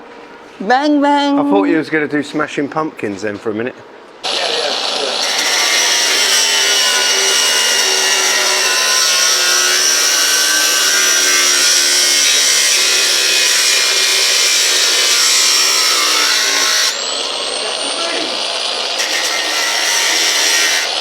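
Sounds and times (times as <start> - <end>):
power tool grinding metal: 4.2 - 21.0.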